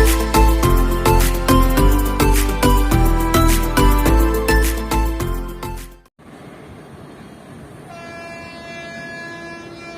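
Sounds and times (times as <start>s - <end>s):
locomotive horn: 7.9s - 9.9s.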